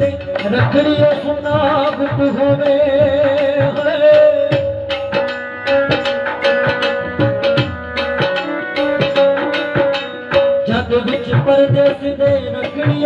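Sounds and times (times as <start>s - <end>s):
hand drums quick rhythm: 0.0s - 13.0s
held melody note: 4.9s - 11.0s.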